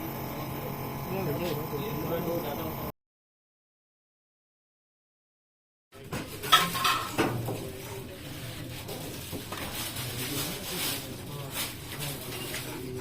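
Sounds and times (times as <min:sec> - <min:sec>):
hard objects clinking and clattering: 0:06.4 - 0:07.4.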